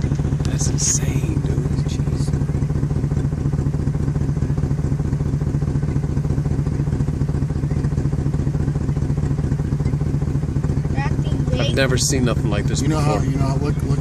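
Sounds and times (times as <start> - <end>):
engine idling: 0.0 - 14.0.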